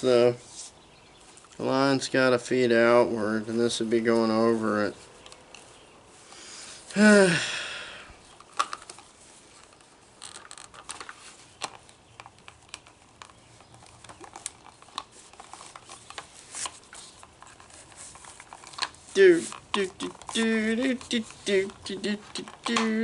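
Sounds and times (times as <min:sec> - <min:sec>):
person groaning: 0:06.9 - 0:08.1
plastic trimmer head clicks and rustles: 0:08.3 - 0:23.0.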